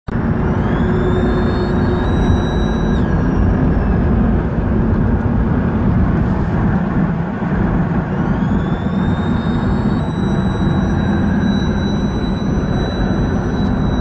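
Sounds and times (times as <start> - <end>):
car engine running: 0.1 - 14.0
thin high-pitched whistle: 0.4 - 3.9, 8.1 - 14.0.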